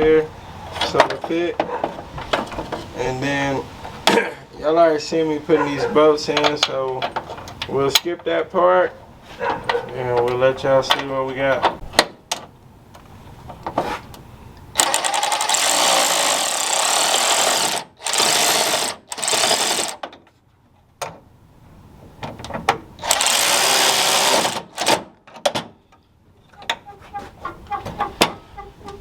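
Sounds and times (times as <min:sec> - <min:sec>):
power tool hammering rattle: 0:14.8 - 0:20.1, 0:23.0 - 0:25.6.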